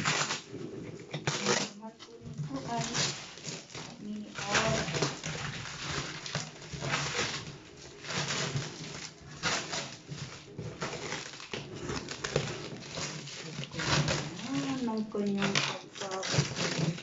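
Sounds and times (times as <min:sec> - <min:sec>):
packaging rustling and crinkling: 0:00.0 - 0:17.0.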